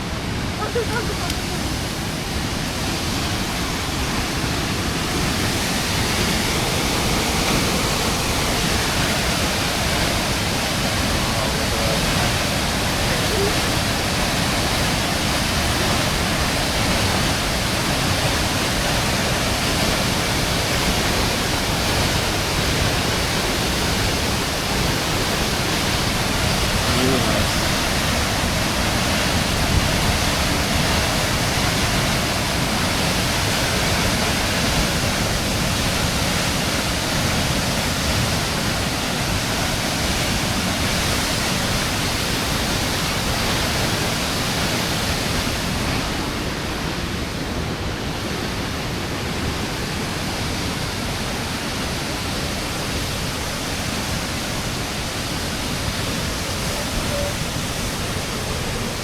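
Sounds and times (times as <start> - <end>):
waterfall roaring: 0.0 - 59.0.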